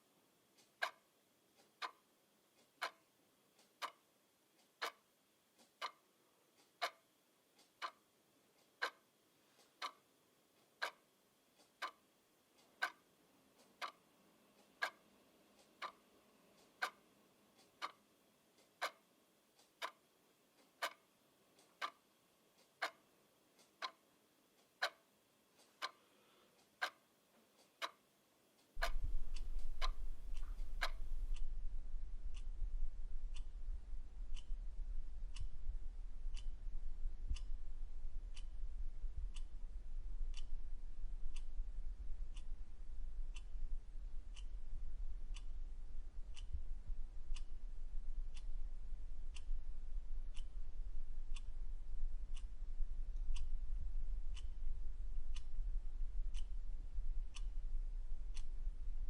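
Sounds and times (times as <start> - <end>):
clock ticking: 0.0 - 59.0
steady low hum: 28.8 - 59.0.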